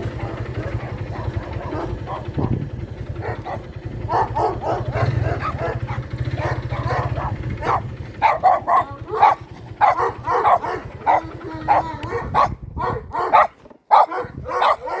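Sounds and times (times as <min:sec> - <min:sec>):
low rumble: 0:00.0 - 0:13.2
dog barking in short yelps: 0:03.2 - 0:15.0.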